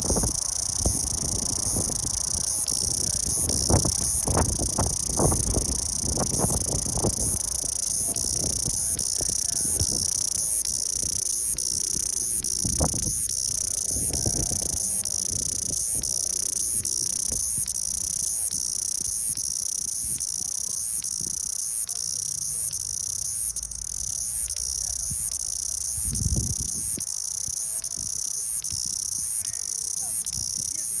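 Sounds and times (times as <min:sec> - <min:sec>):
low rumbling bursts: 0:00.0 - 0:19.3
cicadas singing: 0:00.0 - 0:31.0.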